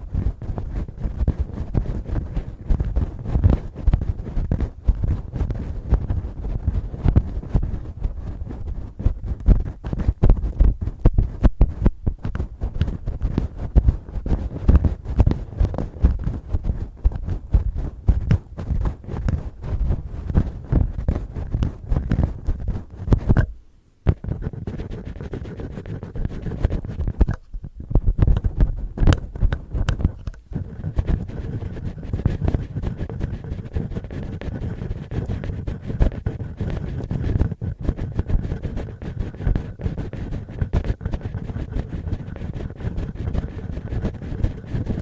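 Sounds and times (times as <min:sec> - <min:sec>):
fingers scratching on microphone: 0:00.0 - 0:45.0.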